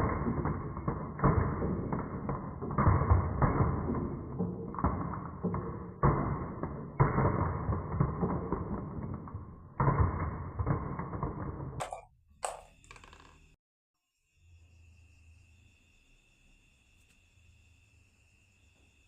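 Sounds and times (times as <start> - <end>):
marbles rolling on wooden track: 0.0 - 13.6.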